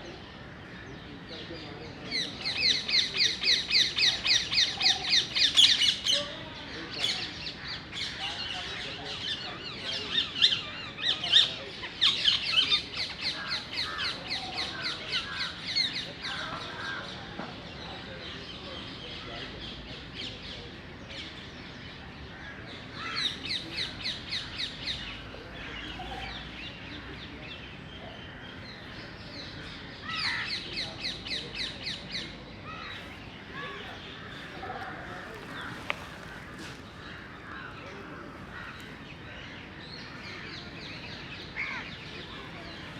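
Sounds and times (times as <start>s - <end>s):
birds chirping and squawking: 7.0s - 17.0s, 22.3s - 42.9s.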